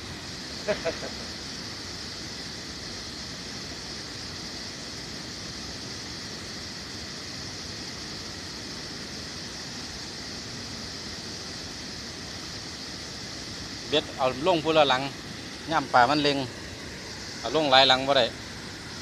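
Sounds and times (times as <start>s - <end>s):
outdoor background hiss: 0.0s - 19.0s.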